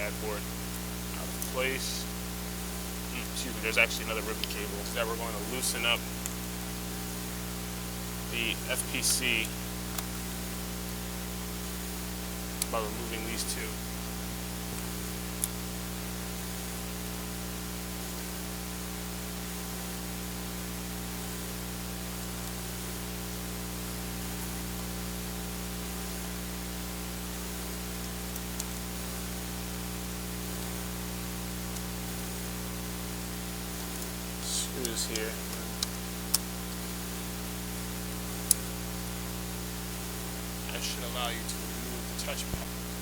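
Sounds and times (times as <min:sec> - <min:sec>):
steady hiss: 0:00.0 - 0:15.7, 0:25.8 - 0:43.0
low electrical hum: 0:00.0 - 0:43.0.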